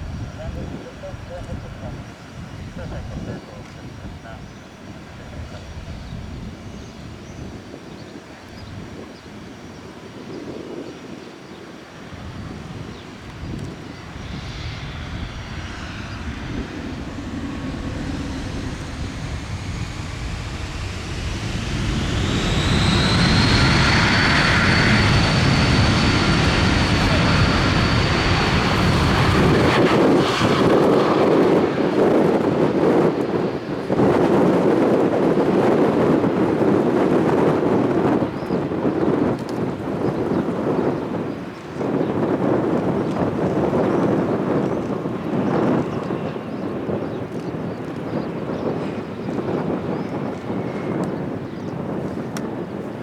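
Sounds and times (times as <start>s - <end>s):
jet engines spooling up: 12.2s - 38.4s.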